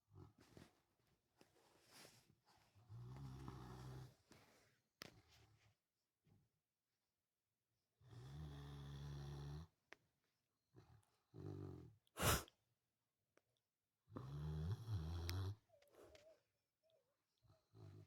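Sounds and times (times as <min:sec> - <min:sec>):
dog snoring: 0:08.0 - 0:09.7, 0:10.8 - 0:12.4, 0:14.1 - 0:15.6.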